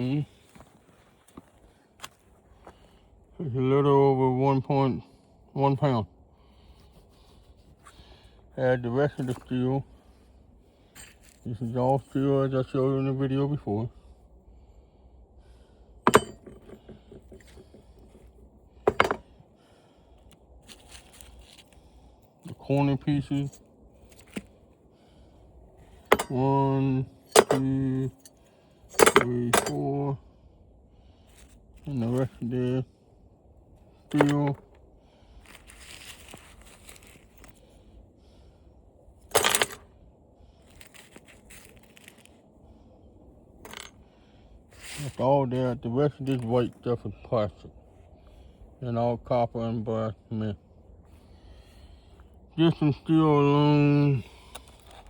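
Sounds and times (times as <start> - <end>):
steel pieces knocking on scale: 16.1 - 17.0, 18.9 - 19.2, 26.1 - 26.4, 27.3 - 27.6, 28.9 - 29.8.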